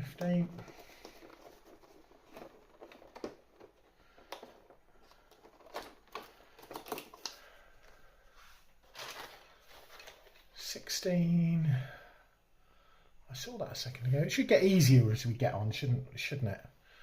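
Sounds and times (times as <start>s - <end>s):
cardboard packaging handling: 0.1s - 8.1s, 8.8s - 10.5s.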